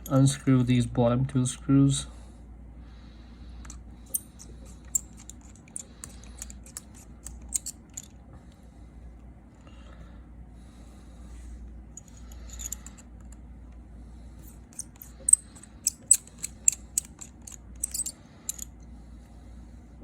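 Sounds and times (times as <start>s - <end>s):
metal tools and screws clinking: 0.0s - 0.5s, 3.7s - 8.2s, 12.0s - 13.4s, 14.4s - 18.8s.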